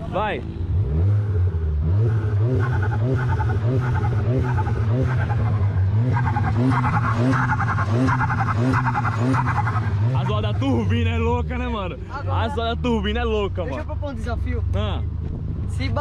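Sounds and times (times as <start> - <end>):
car engine revving at limiter: 0.0 - 13.6.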